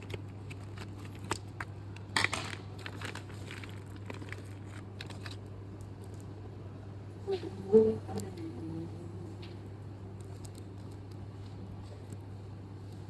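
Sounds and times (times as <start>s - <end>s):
packaging rustling: 0.0s - 6.3s
low electrical hum: 0.0s - 13.0s.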